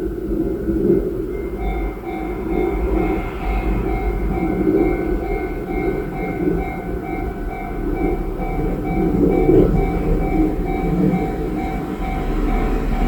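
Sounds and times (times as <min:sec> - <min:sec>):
level-crossing warning bell: 0:00.0 - 0:13.0
train rumbling past: 0:00.0 - 0:13.0.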